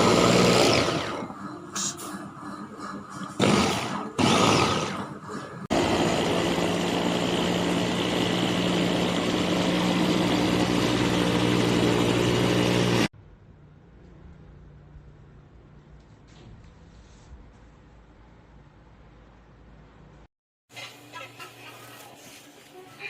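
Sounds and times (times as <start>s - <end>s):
food chopper motor running: 0.0s - 1.5s, 3.4s - 13.1s.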